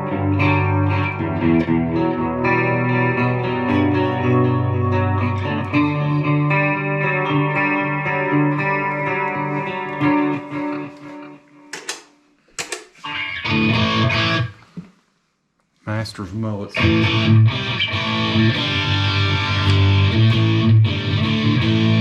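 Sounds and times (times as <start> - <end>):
electric guitar ringing chords: 0.0 - 11.9, 13.0 - 14.6, 16.8 - 22.0.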